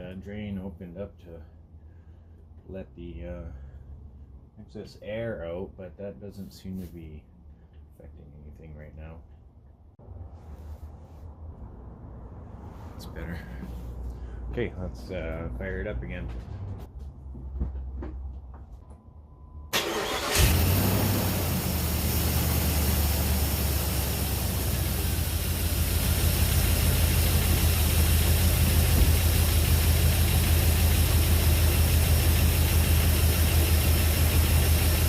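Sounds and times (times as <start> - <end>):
rattly engine idling: 19.8 - 35.0.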